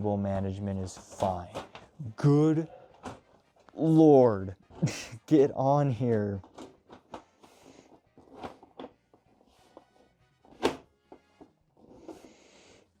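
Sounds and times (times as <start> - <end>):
case cover knocks and clunks: 0.9 - 2.0, 9.8 - 11.5.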